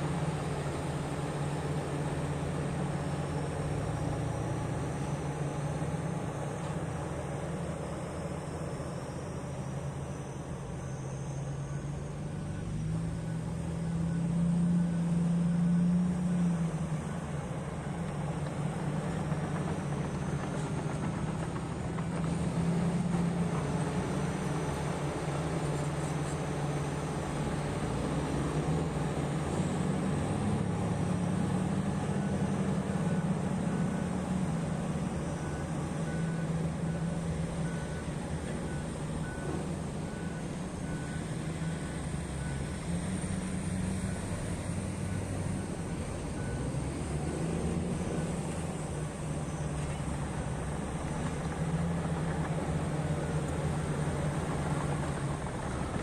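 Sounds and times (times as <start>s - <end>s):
heavy diesel engine drone: 0.0s - 56.0s
faint beeping: 2.2s - 21.8s.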